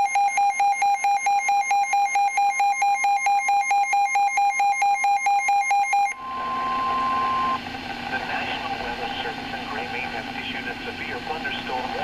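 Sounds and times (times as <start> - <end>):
harsh electronic alarm beeping: 0.0 - 7.6.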